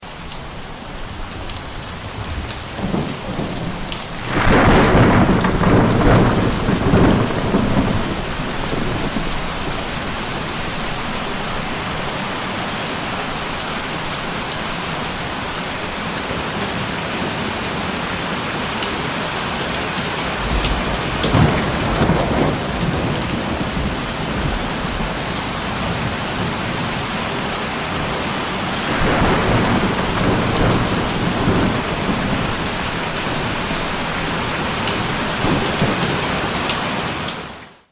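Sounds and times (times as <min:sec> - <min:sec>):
heavy rain: 0:00.0 - 0:37.9
thunder rumbling: 0:00.6 - 0:18.8, 0:19.9 - 0:37.6
sharp thunderclap: 0:01.0 - 0:11.9, 0:20.1 - 0:27.2, 0:27.9 - 0:37.2.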